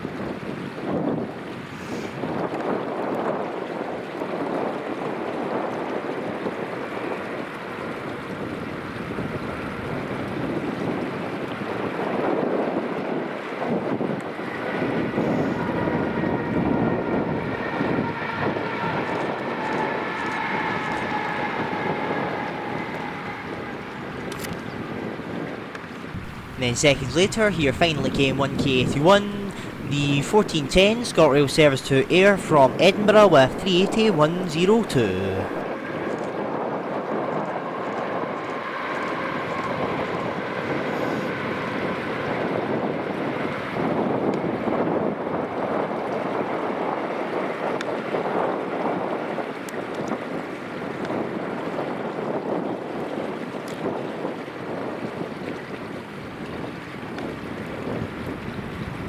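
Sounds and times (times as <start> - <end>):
electric train rumbling past: 17.7 - 24.3.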